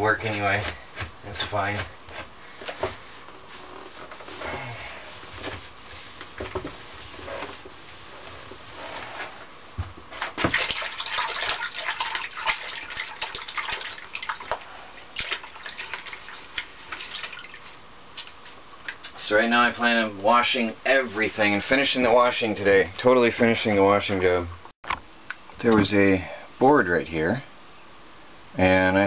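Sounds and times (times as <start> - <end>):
scrubbing and wiping a surface: 0.2 - 9.5
water splashing and dripping: 10.4 - 19.2.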